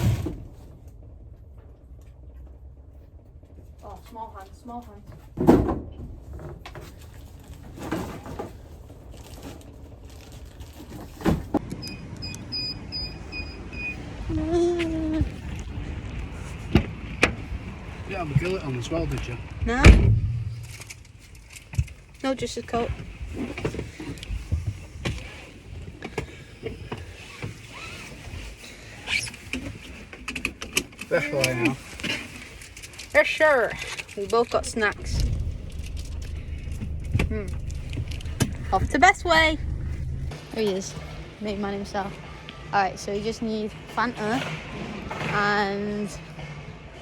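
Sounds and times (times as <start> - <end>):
car warning chime beeping: 11.8 - 14.0
low rumble: 17.4 - 21.7, 34.3 - 40.6
rustling: 17.4 - 22.3, 31.8 - 40.4
heavy thumps: 18.4 - 21.4, 34.5 - 40.3.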